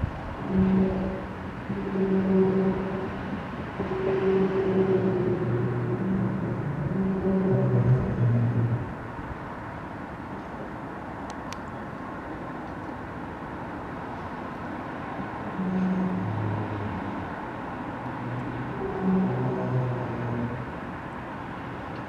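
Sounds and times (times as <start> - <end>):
deep droning tones: 0.0 - 9.6, 15.2 - 21.6
outdoor background rush: 0.0 - 22.0.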